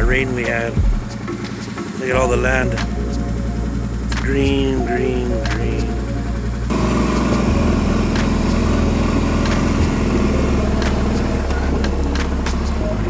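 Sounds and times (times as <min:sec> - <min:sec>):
deep bass line: 0:00.0 - 0:01.4, 0:02.2 - 0:13.0
sharp percussion hits: 0:00.0 - 0:04.8.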